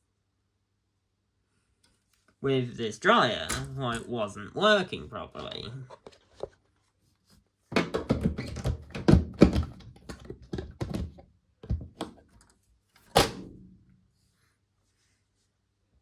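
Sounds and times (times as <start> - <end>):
dryer parts knocking and clunking: 7.7 - 12.4
loud thunk: 13.2 - 13.7.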